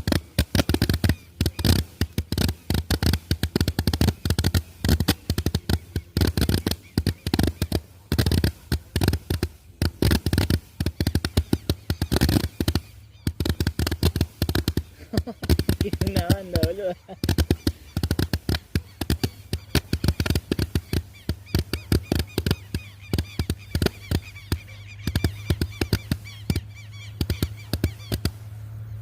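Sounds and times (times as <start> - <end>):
fireworks rapid pops: 0.0 - 28.7.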